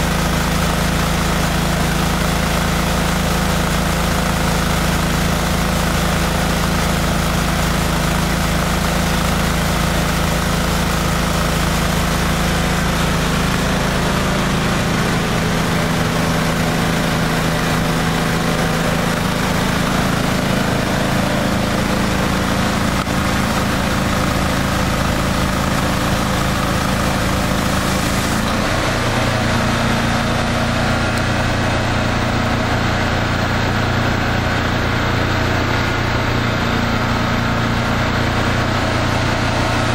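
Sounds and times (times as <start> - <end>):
pressure washer engine running: 0.0 - 39.9.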